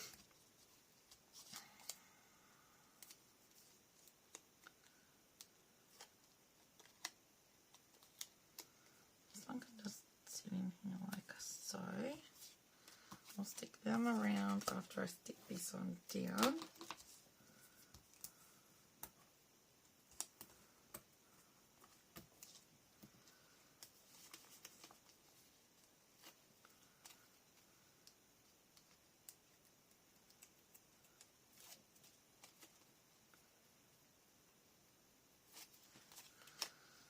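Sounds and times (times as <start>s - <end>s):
paper rustling: 12.8s - 18.5s, 21.8s - 27.2s.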